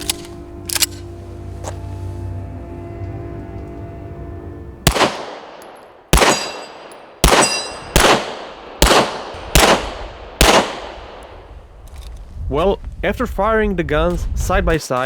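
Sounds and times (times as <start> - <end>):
handgun shots echoing: 4.9 - 11.3.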